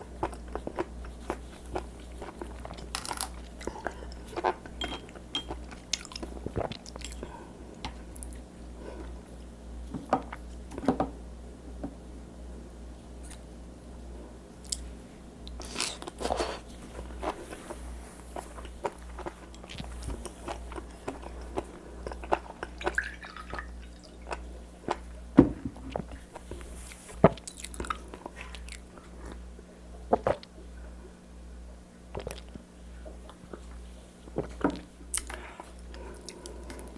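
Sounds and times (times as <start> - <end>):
steady low hum: 0.0 - 36.9
chewing and biting seafood: 18.3 - 25.2.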